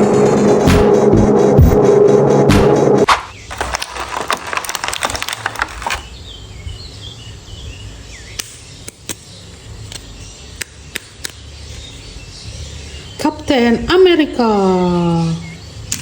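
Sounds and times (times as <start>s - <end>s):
plastic packaging crackling: 3.3s - 6.2s.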